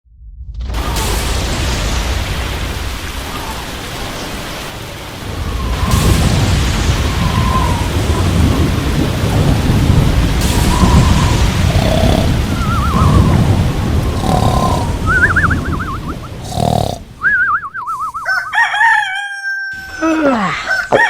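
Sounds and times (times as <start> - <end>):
thunder rumbling: 0.7 - 18.1
rain falling: 0.7 - 21.0.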